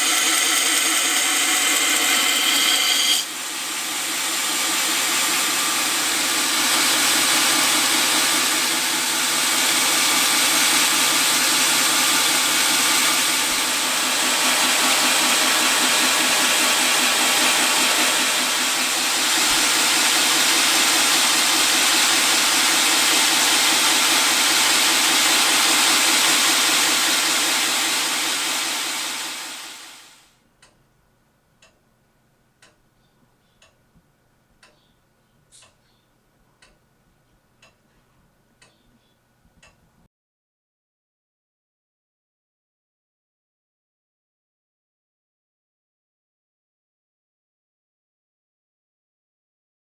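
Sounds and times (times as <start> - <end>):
belt grinder hissing: 0.0 - 30.1
clock ticking: 31.6 - 31.8, 32.6 - 32.8, 34.6 - 34.9, 35.6 - 35.8.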